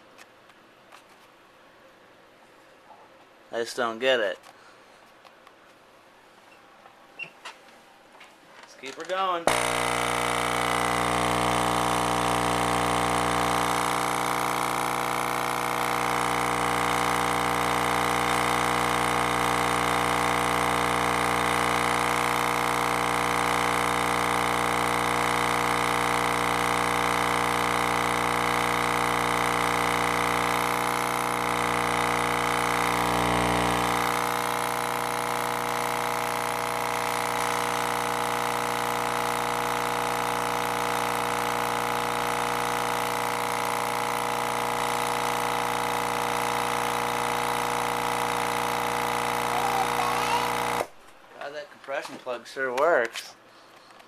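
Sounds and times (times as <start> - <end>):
subwoofer buzzing hum: 9.4 - 51.0.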